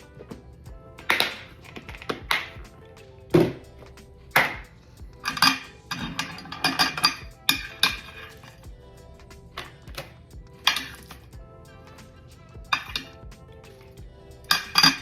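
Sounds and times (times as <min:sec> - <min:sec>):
hard items clinking and clattering: 0:00.0 - 0:08.7, 0:14.5 - 0:15.0
background music: 0:00.0 - 0:15.0.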